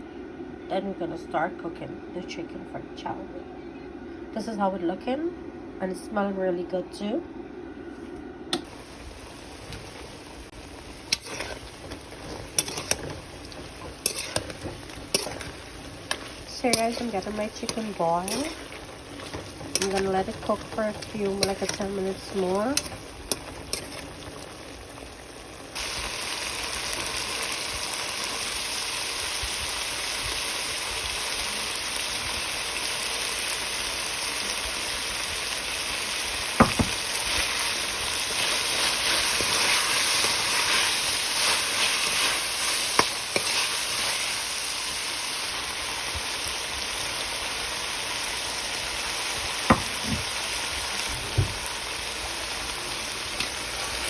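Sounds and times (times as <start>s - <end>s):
chicken sizzling in a pot: 8.6s - 54.0s
sharp knocks: 36.6s - 37.0s.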